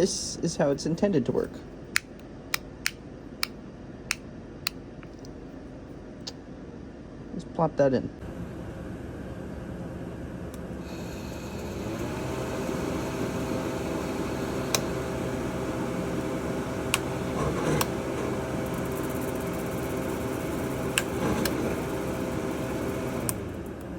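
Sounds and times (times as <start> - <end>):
mixer motor humming: 8.3 - 23.9.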